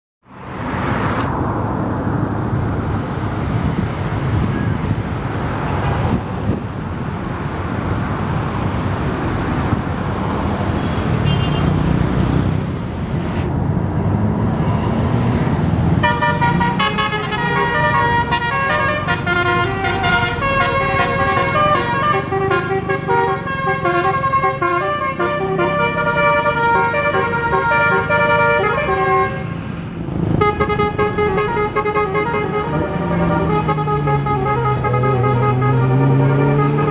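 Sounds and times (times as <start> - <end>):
road and engine noise: 0.2 - 36.9
musical bus horn melody: 16.0 - 29.6, 30.3 - 36.9.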